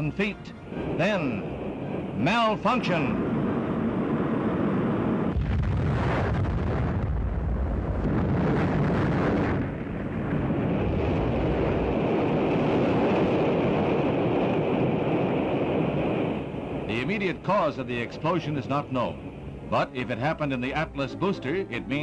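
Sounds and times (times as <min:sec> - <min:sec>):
rocket explosion low rumble: 0:03.1 - 0:17.6.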